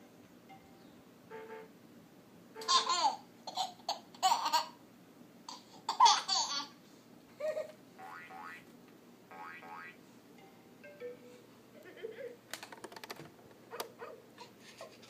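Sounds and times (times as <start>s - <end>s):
toddler giggling: 2.6s - 4.8s.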